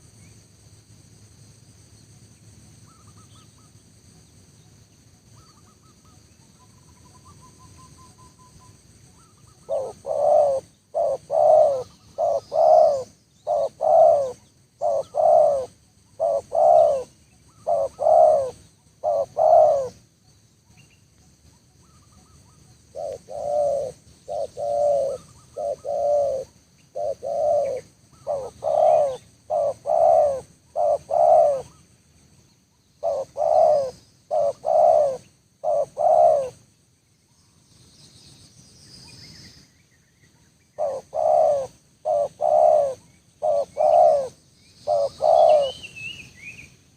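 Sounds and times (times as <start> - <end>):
dove cooing: 5.4 - 20.0, 21.8 - 31.8, 33.0 - 36.7, 40.8 - 46.7.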